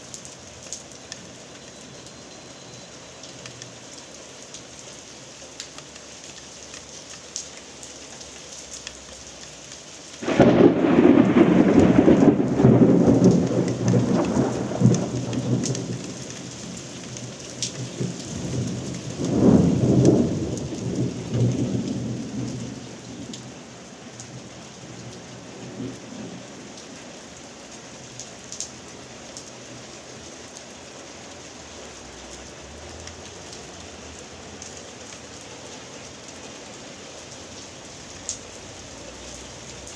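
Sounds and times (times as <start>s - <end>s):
steady rain falling: 0.0s - 39.9s
sharp drip clicks: 1.0s - 3.8s, 5.6s - 9.8s
thunder rumbling: 10.2s - 17.2s, 18.0s - 23.4s.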